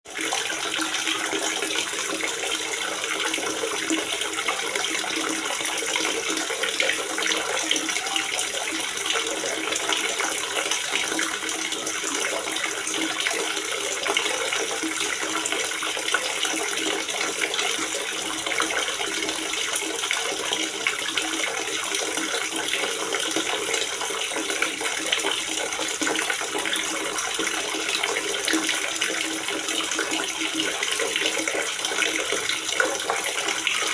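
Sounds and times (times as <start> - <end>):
water gurgling and splashing: 0.1 - 33.9.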